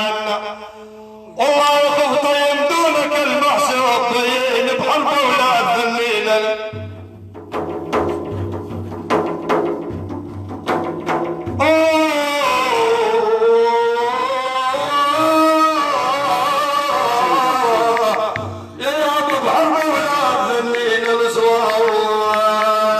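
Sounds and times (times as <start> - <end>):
drum strikes: 6.7 - 12.1, 17.9 - 22.9.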